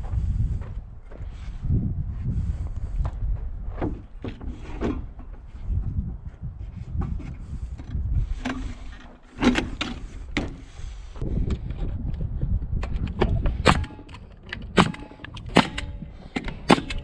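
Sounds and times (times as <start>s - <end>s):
low wind rumble: 0.0s - 17.0s
wooden knocks and clunks: 3.0s - 10.8s.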